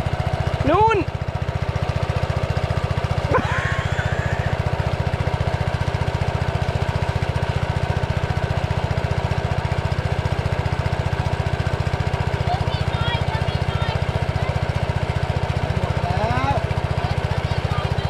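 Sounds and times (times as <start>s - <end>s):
water pump engine chugging: 0.0s - 18.0s
person shouting: 3.3s - 4.7s.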